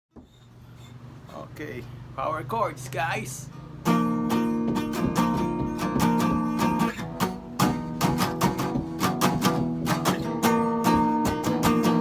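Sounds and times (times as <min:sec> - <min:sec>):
guitar strumming power chords: 0:03.5 - 0:12.0.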